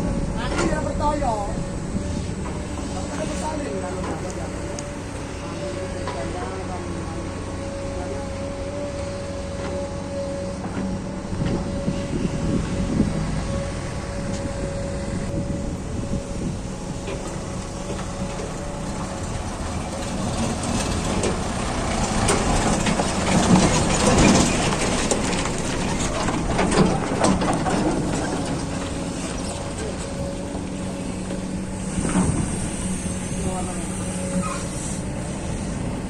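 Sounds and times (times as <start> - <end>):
excavator engine running: 0.0 - 36.0.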